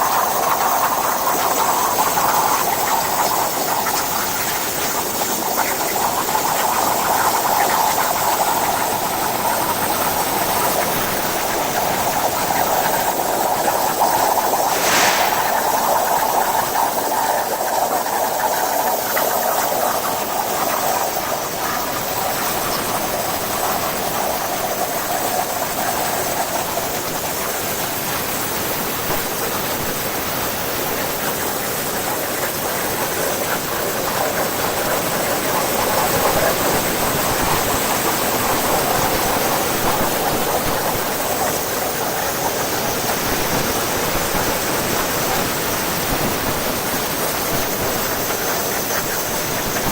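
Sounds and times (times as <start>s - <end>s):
plasma torch cutting steel: 14.6s - 16.4s.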